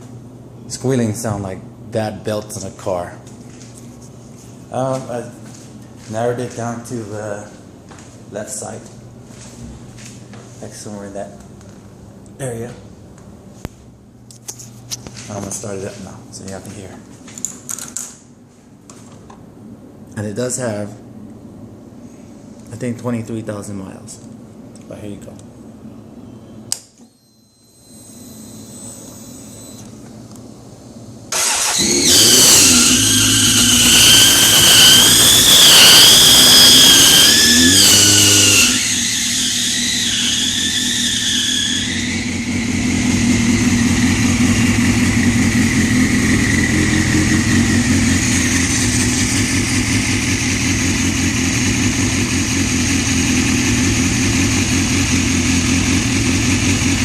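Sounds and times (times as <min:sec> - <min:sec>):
faint steady whine: 0:00.0 - 0:57.0
high-pitched engine squeal: 0:27.1 - 0:29.8, 0:31.4 - 0:53.0
motorcycle engine starting and running: 0:31.3 - 0:41.1, 0:41.8 - 0:57.0.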